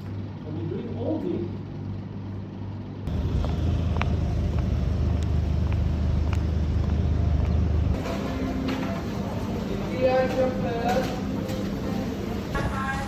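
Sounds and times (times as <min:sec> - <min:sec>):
vehicle engine rumble: 0:03.1 - 0:08.4.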